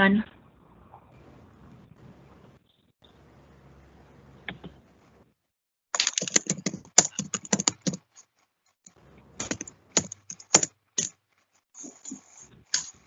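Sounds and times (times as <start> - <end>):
typing on a computer keyboard: 6.0 - 8.2, 9.4 - 11.2.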